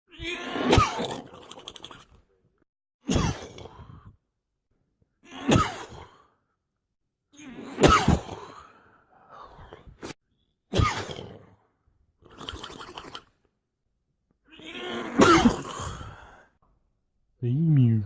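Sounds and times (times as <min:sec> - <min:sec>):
person sneezing: 0:05.3 - 0:06.1, 0:07.6 - 0:08.5, 0:10.7 - 0:11.3, 0:15.0 - 0:16.2.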